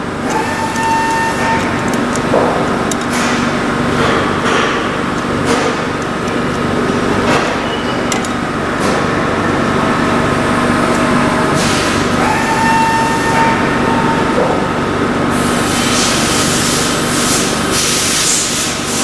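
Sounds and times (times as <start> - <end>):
held tones: 0.0 - 8.4
mechanical running noise: 0.0 - 19.0.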